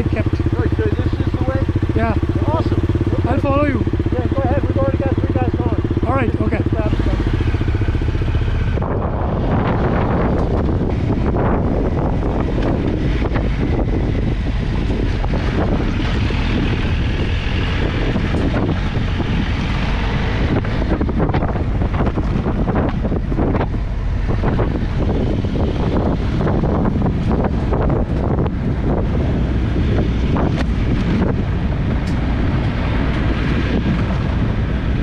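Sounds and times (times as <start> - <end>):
motorcycle engine: 0.0 - 35.0
wind buffeting microphone: 0.0 - 35.0.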